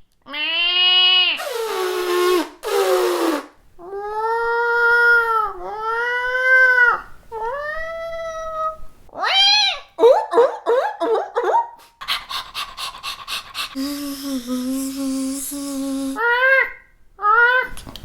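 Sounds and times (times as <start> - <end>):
girl imitating cat meows: 0.3 - 1.4, 3.8 - 10.0, 13.8 - 17.8
girl hissing like a cat: 0.9 - 3.5, 11.9 - 16.4
quick choppy vocal sounds: 11.9 - 16.2.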